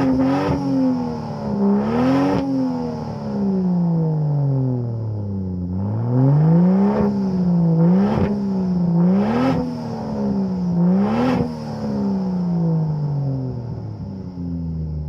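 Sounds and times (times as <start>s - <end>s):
car engine revving: 0.0s - 15.0s.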